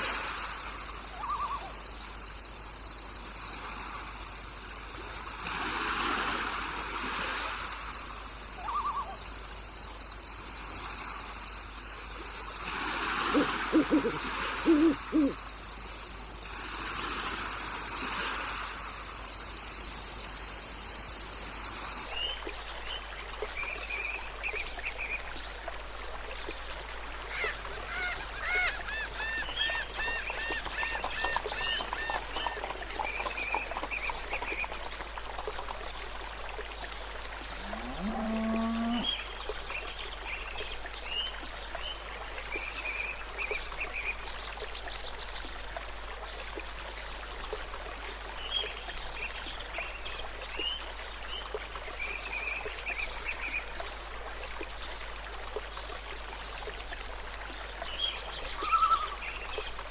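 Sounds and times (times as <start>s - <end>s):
high insect trill: 0.0s - 5.8s, 6.4s - 22.1s
cricket chirping: 0.0s - 22.1s
low hooting calls: 0.4s - 2.6s, 8.0s - 16.9s
animal calls in rapid chirps: 1.0s - 1.9s, 8.5s - 9.4s.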